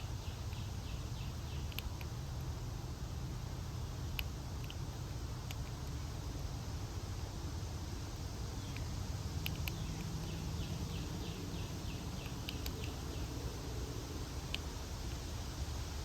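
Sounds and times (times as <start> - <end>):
low outdoor rumble: 0.0 - 16.0
bird chip calls: 9.5 - 13.4.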